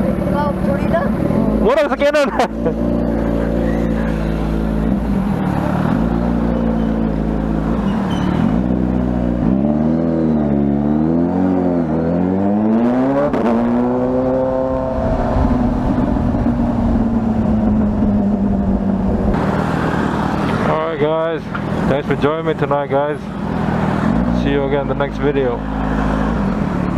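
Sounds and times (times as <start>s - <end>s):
car engine revving: 0.0s - 26.9s.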